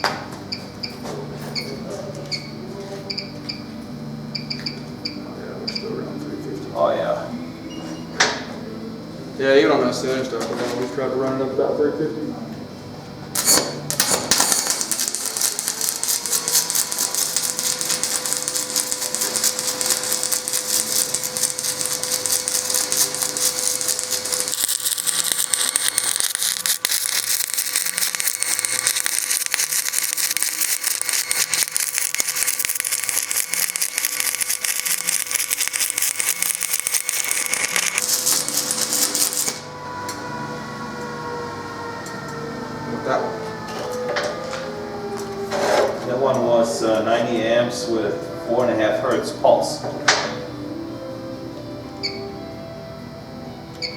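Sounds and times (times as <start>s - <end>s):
welding arc crackling and hissing: 13.3s - 39.7s.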